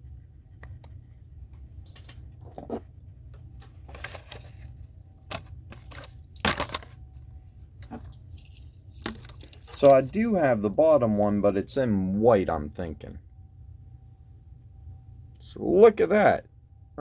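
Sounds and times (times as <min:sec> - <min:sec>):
low steady hum: 0:00.0 - 0:17.0
plastic packaging crinkling: 0:03.7 - 0:07.1.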